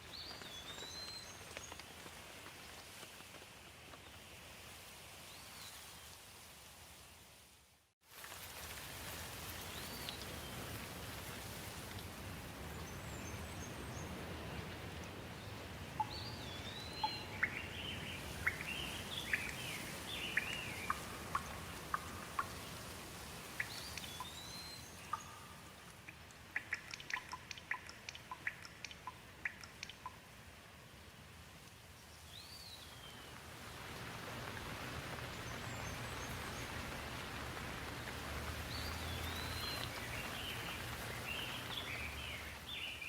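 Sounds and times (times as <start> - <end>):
steady rain falling: 0.0 - 43.0
birds calling: 16.0 - 22.7
water drips tapping: 20.2 - 22.7, 23.6 - 24.4, 25.1 - 30.2.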